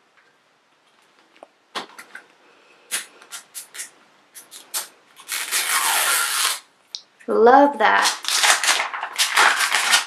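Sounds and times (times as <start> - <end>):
plastic packaging crackling: 2.9 - 6.6, 7.9 - 10.0.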